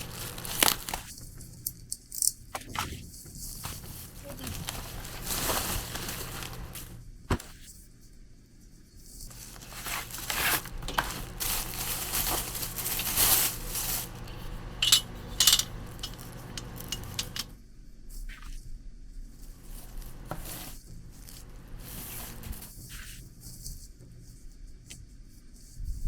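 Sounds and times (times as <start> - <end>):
small hard objects clinking: 0.0 - 1.1, 3.6 - 7.0, 9.3 - 17.6.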